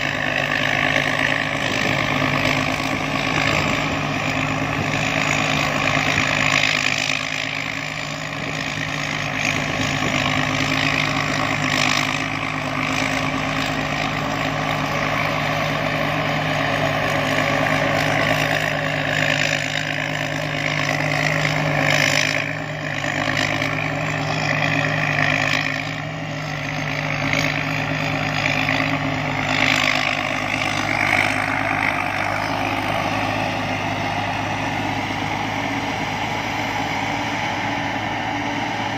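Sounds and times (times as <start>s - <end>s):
combine harvester engine droning: 0.0s - 38.9s.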